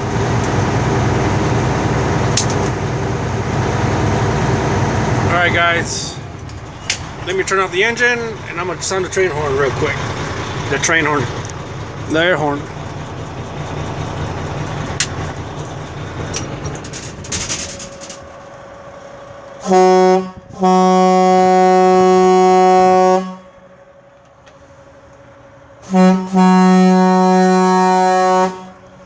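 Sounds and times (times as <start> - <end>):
diesel truck engine running: 0.0 - 29.0
truck air horn: 19.6 - 29.0.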